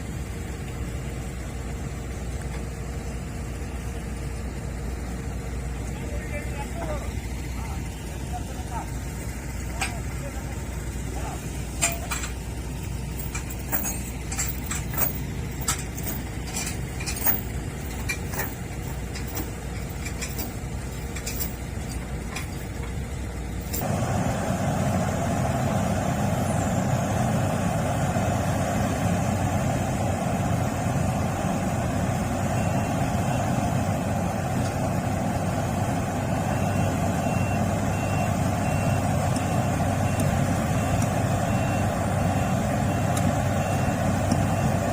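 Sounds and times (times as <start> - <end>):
heavy diesel machinery running: 0.0 - 44.9
metal clanks: 11.5 - 23.0.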